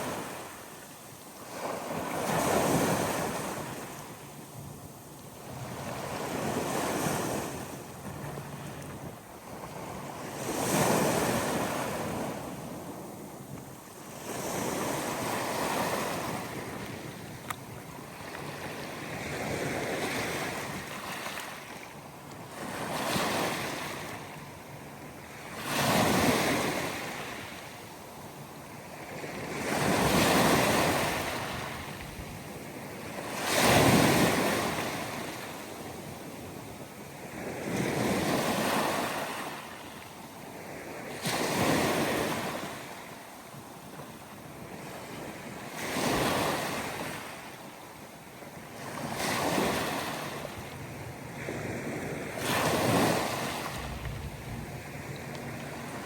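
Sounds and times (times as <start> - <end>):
ocean waves breaking: 48.8 - 56.0.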